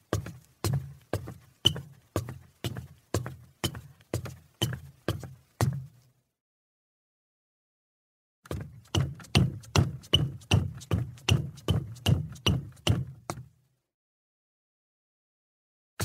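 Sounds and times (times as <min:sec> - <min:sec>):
footsteps on wooden stairs: 0:00.0 - 0:06.0, 0:08.5 - 0:13.5.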